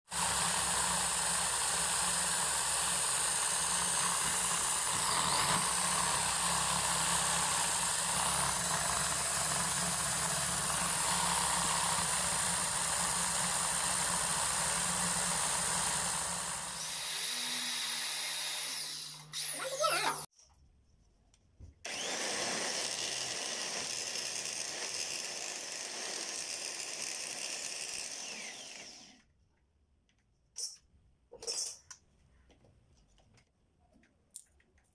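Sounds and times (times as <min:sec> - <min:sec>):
power tool running: 0:00.1 - 0:20.3, 0:21.9 - 0:29.2.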